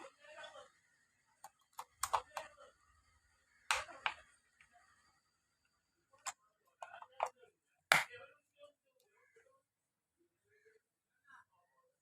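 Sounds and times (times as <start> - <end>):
handling clicks and knocks: 6.8 - 7.3.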